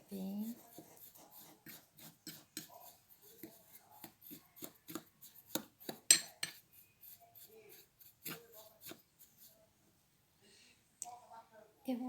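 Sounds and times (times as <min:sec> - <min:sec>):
spoon scraping dry mix in cup: 0:00.0 - 0:09.6
spoon clinking against cup: 0:05.9 - 0:06.6.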